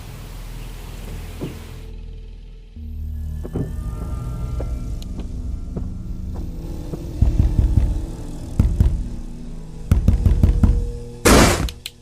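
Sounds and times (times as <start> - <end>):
low rumbling drone: 0.0 - 12.0.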